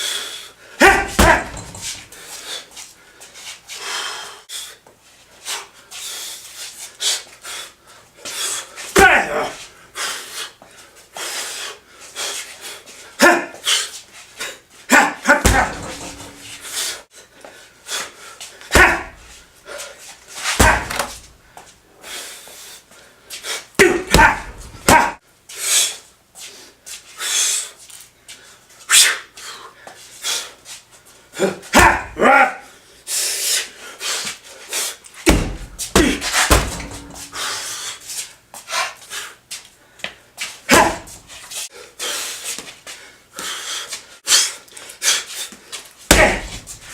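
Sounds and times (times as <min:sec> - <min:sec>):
punches thudding on refrigerator: 0:00.8 - 0:02.1, 0:15.4 - 0:16.6, 0:18.7 - 0:19.3, 0:20.6 - 0:21.3, 0:23.8 - 0:25.2, 0:31.8 - 0:32.2, 0:35.3 - 0:37.4, 0:40.7 - 0:41.2, 0:46.1 - 0:46.9.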